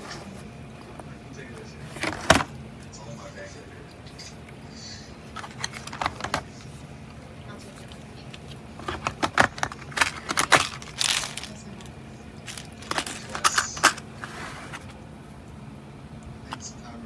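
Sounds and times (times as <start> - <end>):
plastic pieces clicking and knocking: 8.8 - 14.0.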